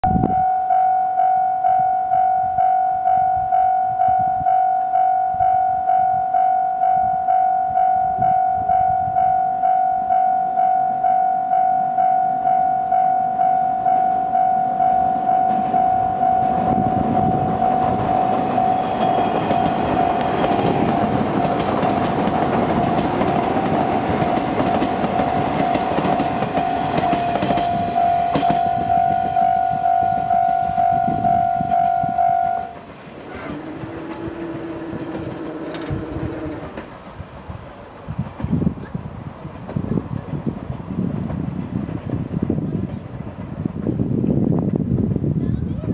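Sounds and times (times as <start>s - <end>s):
level crossing bell ringing: 0.2s - 20.4s, 24.8s - 32.8s
train wheels clacking on rails: 15.2s - 29.0s.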